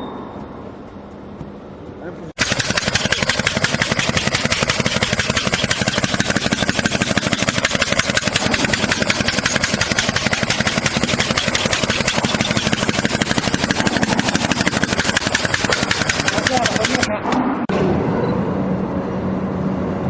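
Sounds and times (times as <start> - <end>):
heavy machinery pulsing: 2.4 - 18.1.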